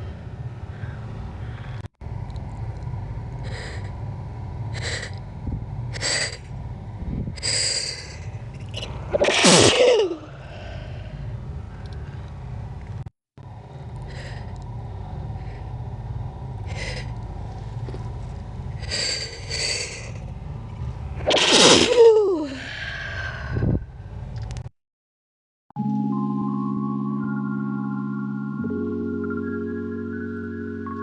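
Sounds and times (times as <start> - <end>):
breathy intakes: 3.4 - 4.0, 4.7 - 5.2, 5.9 - 6.5, 7.2 - 12.6, 13.8 - 15.8, 16.6 - 17.2, 18.8 - 20.3, 21.2 - 23.9
slowed-down sneezes: 9.1 - 10.3, 21.2 - 22.4.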